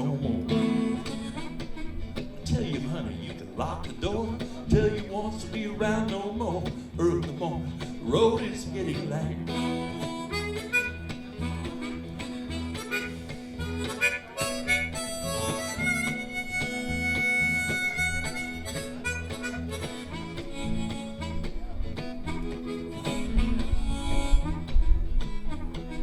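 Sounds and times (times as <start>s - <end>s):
guitar: 0.0s - 26.0s
heavy low beat: 0.3s - 26.0s
harmonica solo: 0.4s - 2.5s, 9.4s - 26.0s.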